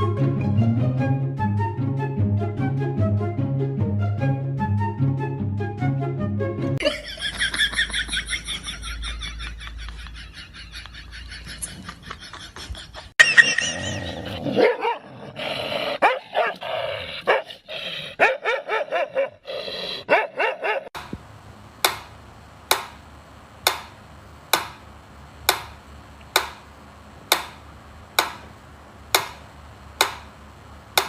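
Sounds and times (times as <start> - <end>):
dog barking yipping and whining: 14.5 - 15.0, 16.0 - 16.6, 17.3 - 17.5, 18.2 - 19.4, 20.1 - 21.0.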